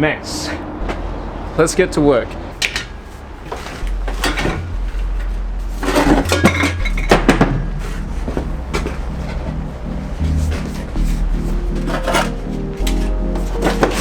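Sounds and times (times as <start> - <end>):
metal objects clattering: 2.6 - 9.4, 11.7 - 14.0.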